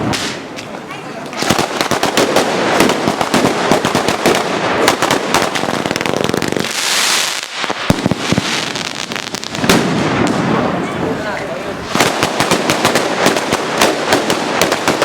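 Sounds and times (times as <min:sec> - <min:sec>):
firecrackers crackling: 0:00.0 - 0:15.0
loud firework bangs: 0:00.0 - 0:15.0
firework hiss: 0:01.4 - 0:10.8.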